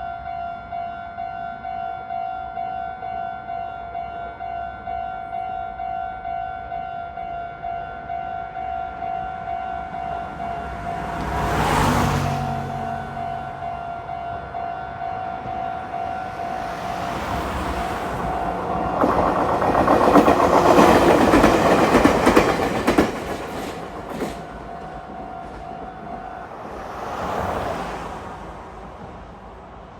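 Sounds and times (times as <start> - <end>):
train wheels clattering over rail joints: 17.2 - 26.2.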